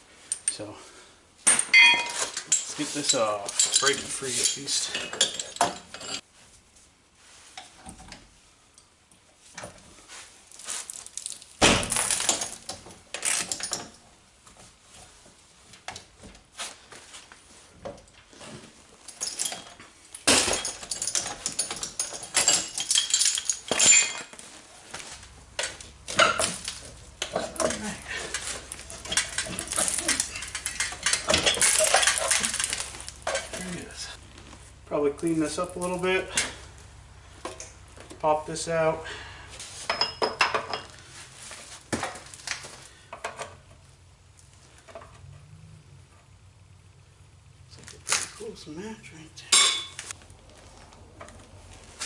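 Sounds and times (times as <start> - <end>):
metal tools clinking and scraping: 1.4 - 6.3, 12.1 - 14.0, 18.4 - 34.2, 35.4 - 36.8, 39.7 - 43.6, 49.5 - 50.2.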